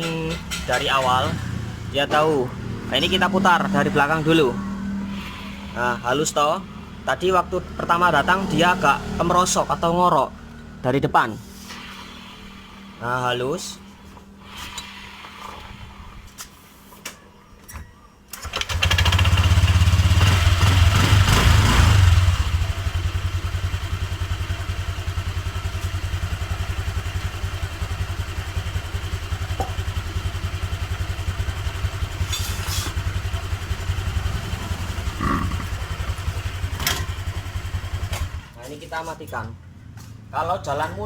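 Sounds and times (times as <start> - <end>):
scooter engine starting and idling: 18.3 - 38.6.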